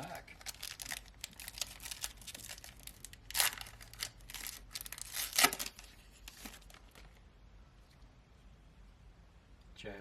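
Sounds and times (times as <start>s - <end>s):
foil wrapper tearing and crinkling: 0.1s - 7.0s.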